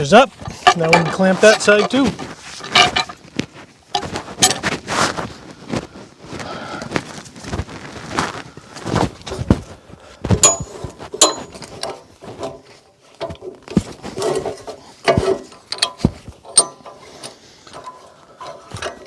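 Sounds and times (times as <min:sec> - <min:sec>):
mechanical clicks and clunks: 0:13.2 - 0:19.0.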